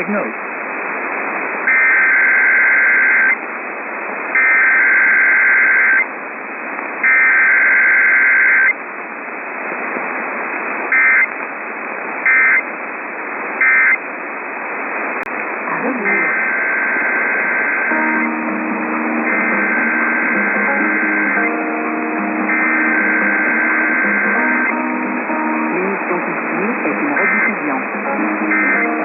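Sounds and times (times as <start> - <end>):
radio hiss: 0.0 - 29.0
buzzy digital data bursts: 15.9 - 25.9.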